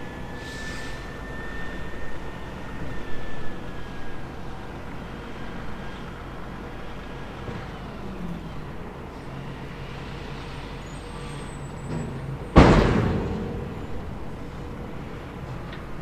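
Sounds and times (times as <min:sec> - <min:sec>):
excavator diesel engine running: 0:01.0 - 0:16.0
load crashing into steel truck bed: 0:12.0 - 0:16.0.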